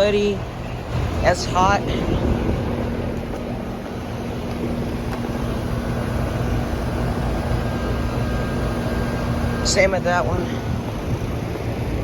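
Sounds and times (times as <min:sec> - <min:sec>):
condenser fan rushing: 0:00.0 - 0:12.0
low compressor hum: 0:00.0 - 0:12.0.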